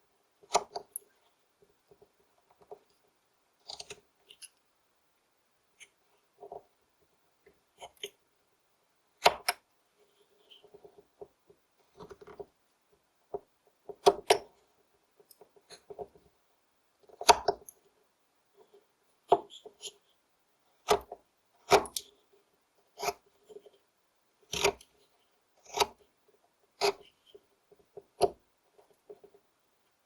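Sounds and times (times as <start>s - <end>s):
knife slicing wood: 24.5s - 24.8s, 25.6s - 26.0s.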